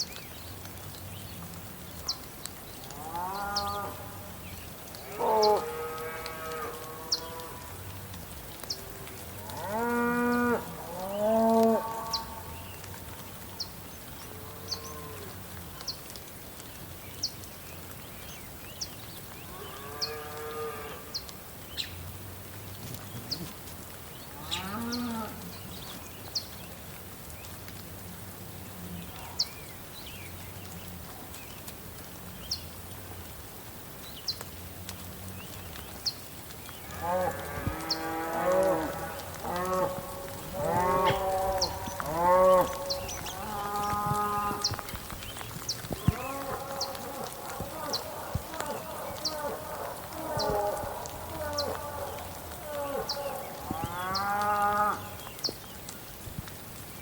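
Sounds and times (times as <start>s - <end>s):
rain hissing: 0.0s - 57.0s
cows mooing: 5.0s - 7.6s, 9.4s - 12.4s, 36.9s - 44.9s, 46.0s - 55.1s.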